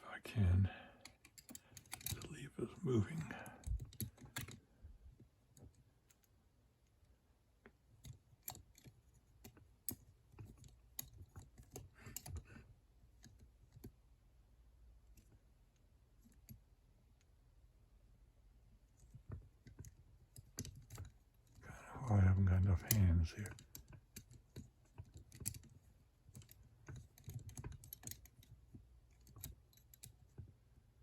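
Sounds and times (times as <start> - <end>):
lock picking clicks and scrapes: 1.0 - 2.4, 3.6 - 4.7, 8.0 - 14.0, 19.0 - 21.6, 22.8 - 30.4.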